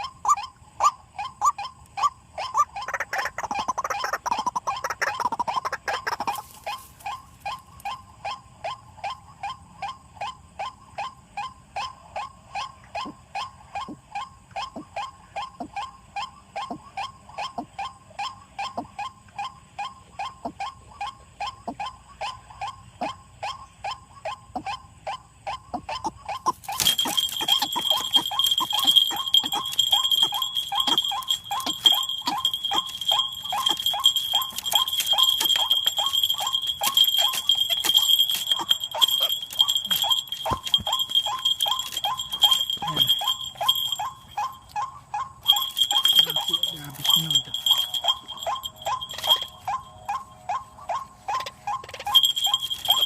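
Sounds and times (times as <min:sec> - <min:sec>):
waterhen calling: 0:02.4 - 0:07.2, 0:26.4 - 0:44.6
high-pitched shrill tone: 0:26.6 - 0:44.6.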